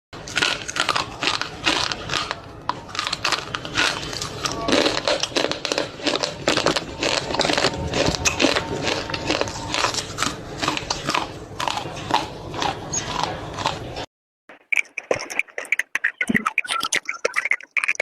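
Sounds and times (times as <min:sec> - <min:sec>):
pencil being chewed crunching: 0:00.2 - 0:18.0.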